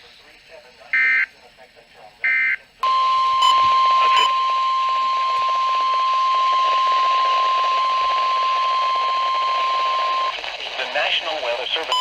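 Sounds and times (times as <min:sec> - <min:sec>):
radio static hiss: 0:00.0 - 0:05.6, 0:06.3 - 0:12.0
short higher beeps: 0:02.8 - 0:10.3
steady high warning tone: 0:02.8 - 0:10.4.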